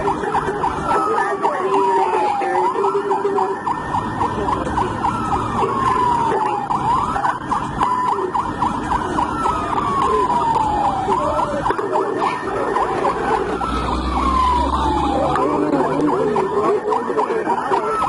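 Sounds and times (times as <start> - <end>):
police siren wailing: 0.0 - 18.0
siren rapid chirping yelp: 0.0 - 18.0.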